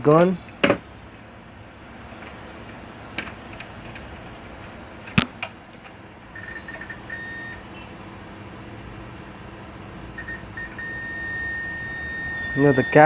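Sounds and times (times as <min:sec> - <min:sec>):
multimeter beeps: 0:06.4 - 0:07.8, 0:10.2 - 0:13.0.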